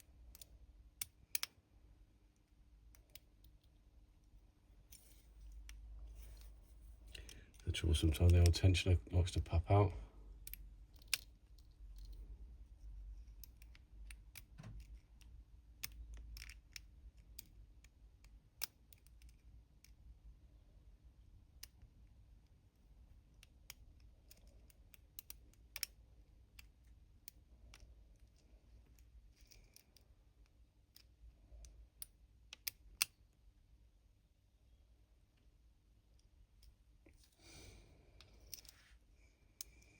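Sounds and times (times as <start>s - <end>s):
lock pick clicking and scraping: 10.3s - 12.3s.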